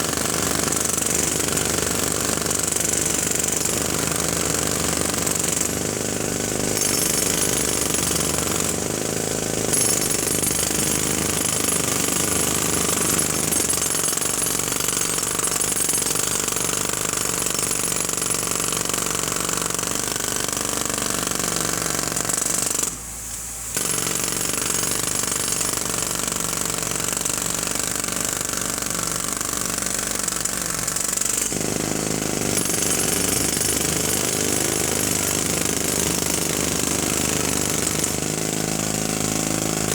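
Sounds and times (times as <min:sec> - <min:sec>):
jackhammer hammering: 0:00.0 - 0:23.0, 0:23.7 - 0:39.9.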